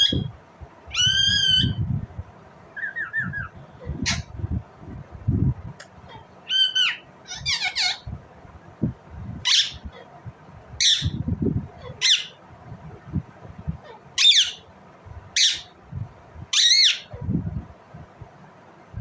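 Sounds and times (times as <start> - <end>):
parakeet squawking: 0.0 - 0.3, 0.9 - 1.8, 2.8 - 4.4, 6.0 - 8.1, 9.4 - 10.1, 10.8 - 11.2, 11.8 - 12.4, 13.8 - 14.7, 15.4 - 15.7, 16.5 - 17.2.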